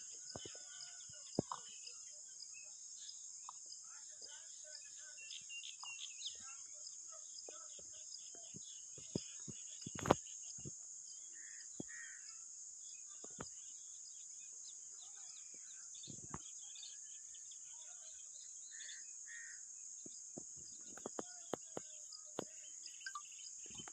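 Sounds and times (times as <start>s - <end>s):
high-pitched insect chorus: 0.0s - 23.9s
short bird calls: 11.3s - 12.4s.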